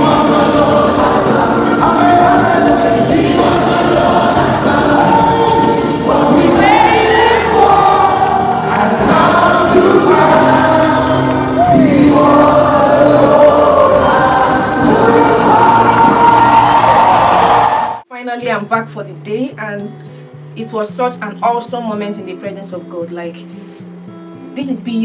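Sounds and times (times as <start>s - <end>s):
choir singing gospel song: 0.0s - 18.0s.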